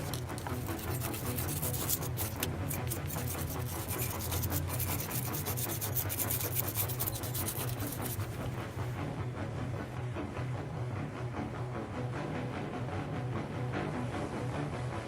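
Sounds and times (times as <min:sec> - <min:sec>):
fast scrubbing strokes: 0:00.0 - 0:08.9
background music: 0:00.0 - 0:15.0.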